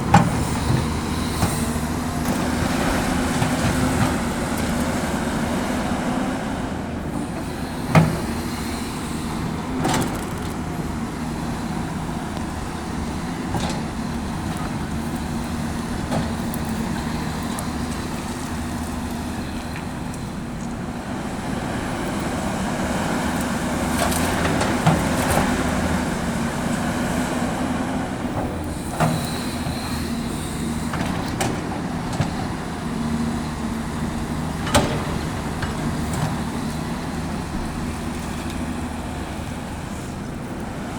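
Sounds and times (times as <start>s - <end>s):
excavator diesel engine running: 0.0s - 40.9s.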